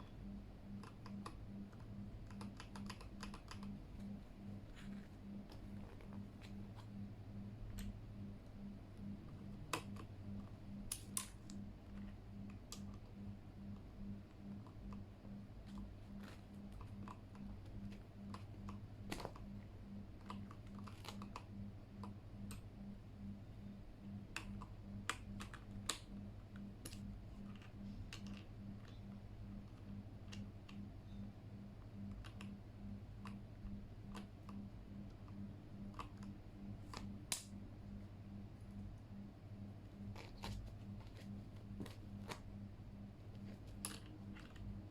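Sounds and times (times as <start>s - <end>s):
low pulsing hum: 0.0s - 44.9s
mechanical keyboard clicks: 0.8s - 4.1s.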